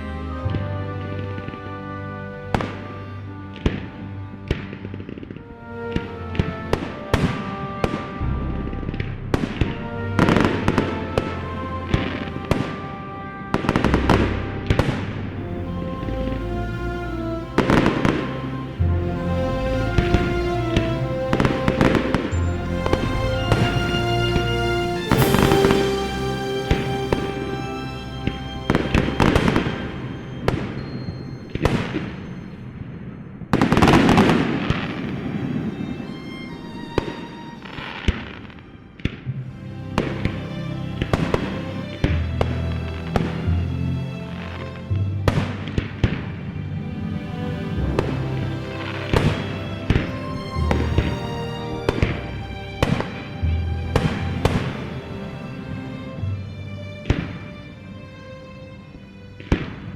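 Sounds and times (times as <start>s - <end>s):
music: 0.0s - 59.9s
fireworks bursting and crackling: 30.4s - 36.1s.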